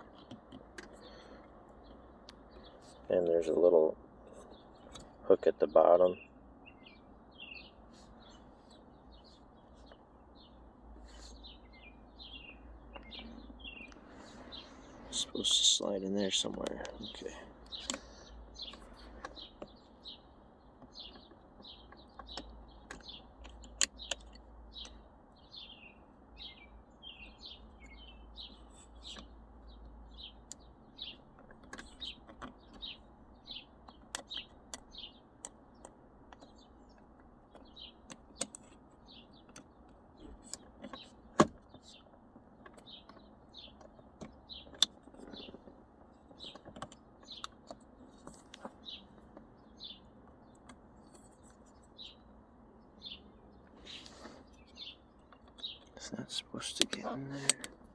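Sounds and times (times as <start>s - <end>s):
small bird chirping: 0.0s - 57.9s
plastic parts clicking: 56.8s - 57.9s.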